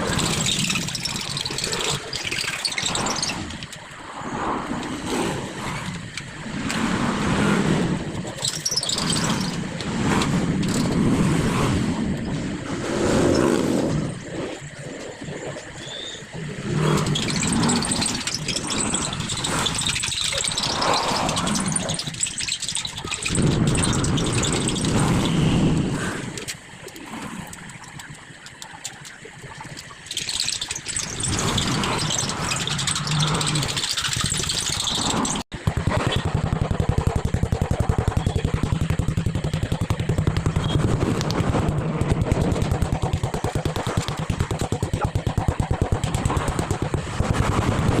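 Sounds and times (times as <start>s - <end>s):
engine running with rapid pulse: 29.8s - 48.0s.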